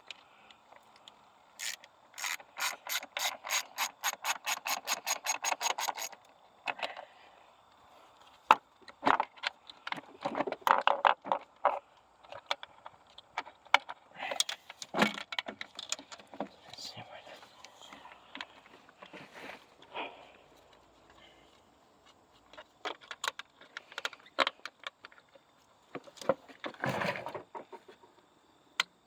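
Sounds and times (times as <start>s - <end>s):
ratchet wrench clicking: 1.6s - 6.1s.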